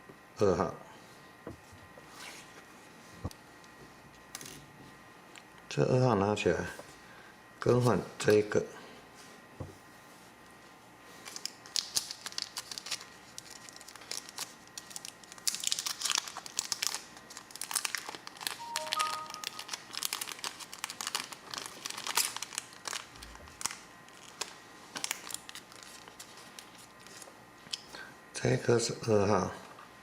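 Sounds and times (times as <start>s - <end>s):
crinkling of handled parts: 11.2s - 27.8s.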